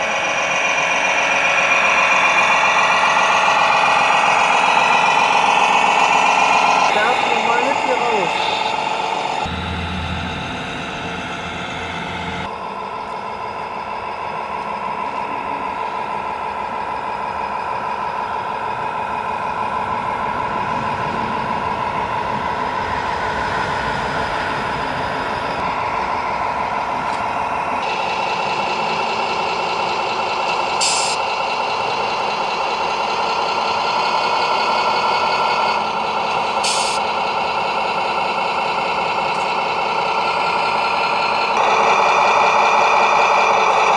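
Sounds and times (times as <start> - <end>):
diesel truck engine sound from speakers: 0.0 - 43.9
air-brake hisses: 30.8 - 31.2, 36.6 - 37.0.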